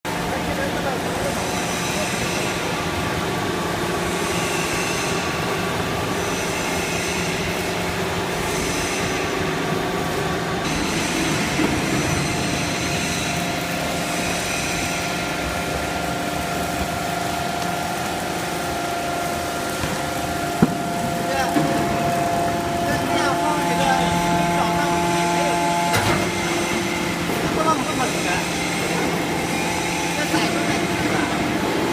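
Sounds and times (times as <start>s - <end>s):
baling machine hum and hiss: 0.1s - 31.9s.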